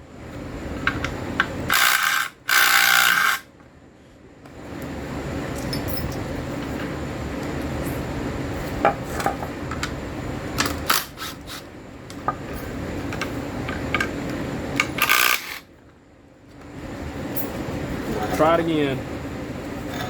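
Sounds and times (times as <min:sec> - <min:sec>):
steady low hum: 0:00.0 - 0:20.0
metal tools clinking: 0:05.6 - 0:06.2.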